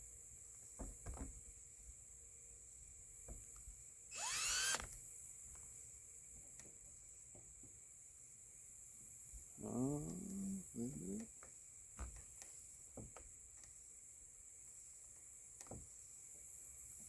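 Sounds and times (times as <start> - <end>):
power drill motor whining: 4.1 - 5.0.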